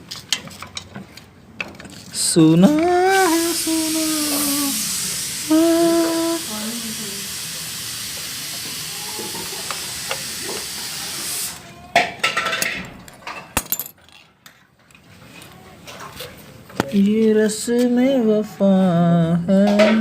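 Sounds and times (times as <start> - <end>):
steady hiss: 3.0 - 11.7.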